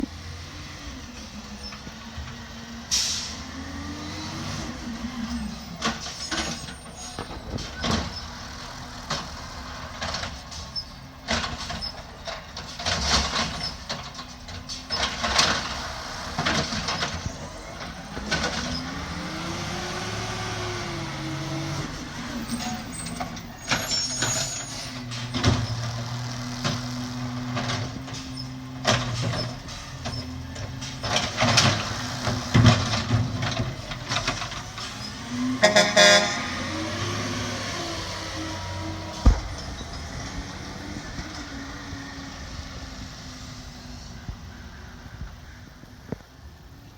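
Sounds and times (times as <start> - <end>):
diesel truck engine: 0.0 - 46.9
air brake hisses: 2.9 - 3.5
recycling bangs and clatter: 38.1 - 41.8.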